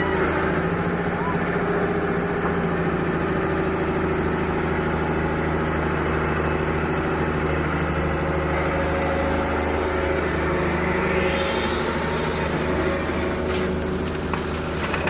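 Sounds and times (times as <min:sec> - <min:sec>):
diesel engine idling: 0:00.0 - 0:15.0
hiss rising in pitch: 0:08.2 - 0:14.7.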